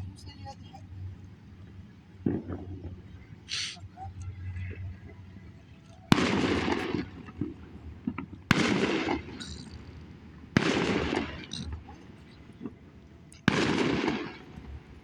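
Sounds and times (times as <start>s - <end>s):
firework rockets cracking: 2.2s - 3.8s, 6.1s - 15.0s
hissing crackle: 2.2s - 5.2s, 5.9s - 15.0s.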